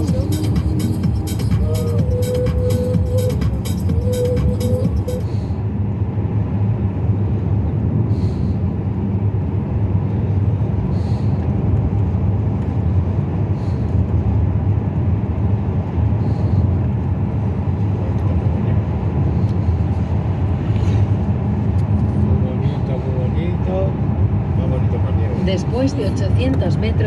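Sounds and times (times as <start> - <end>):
car road noise rumble: 0.0 - 27.0.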